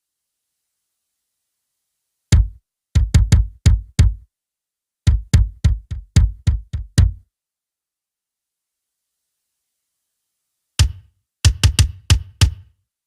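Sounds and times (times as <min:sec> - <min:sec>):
kick drum thuds: 0:02.3 - 0:04.3, 0:05.1 - 0:07.2, 0:10.8 - 0:12.7.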